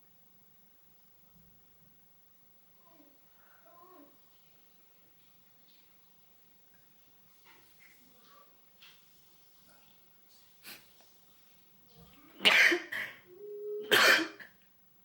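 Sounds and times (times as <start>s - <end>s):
person sneezing: 12.4s - 13.2s, 13.9s - 14.4s.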